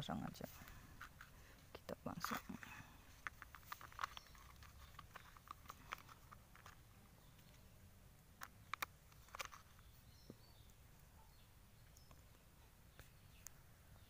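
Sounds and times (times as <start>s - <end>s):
small parts clicking and tapping: 2.2s - 7.7s, 8.3s - 9.9s.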